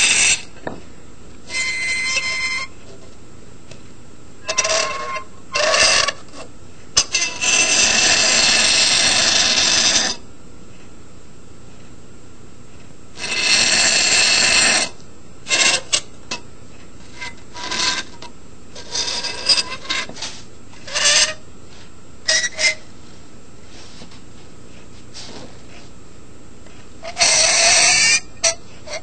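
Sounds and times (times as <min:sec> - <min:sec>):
knife squealing on dry ice: 0:00.0 - 0:00.5, 0:01.5 - 0:02.8, 0:04.4 - 0:06.2, 0:07.2 - 0:10.2, 0:13.2 - 0:16.0, 0:17.1 - 0:18.2, 0:18.8 - 0:21.4, 0:22.3 - 0:22.9, 0:27.0 - 0:29.0.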